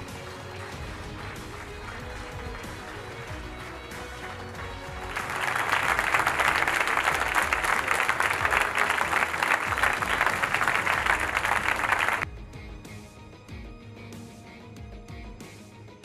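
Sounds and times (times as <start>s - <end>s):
audience applauding: 0.0s - 12.2s.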